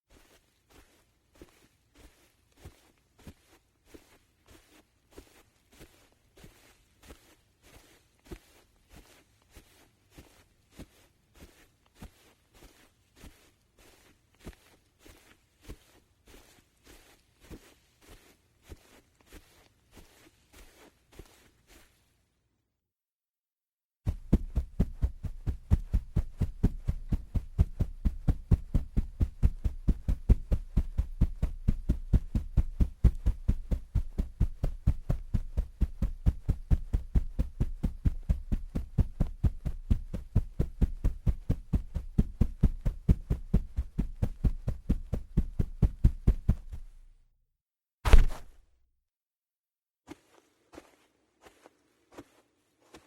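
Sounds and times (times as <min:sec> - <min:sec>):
running footsteps: 0:24.1 - 0:47.0, 0:48.1 - 0:48.6
heavy thud: 0:48.1 - 0:48.6.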